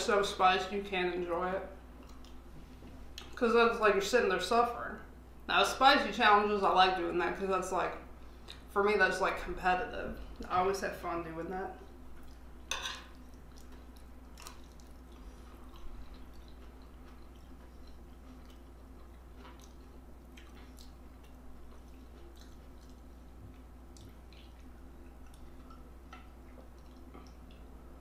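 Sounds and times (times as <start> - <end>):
steady low hum: 0.0 - 28.0
person chewing: 12.2 - 27.8.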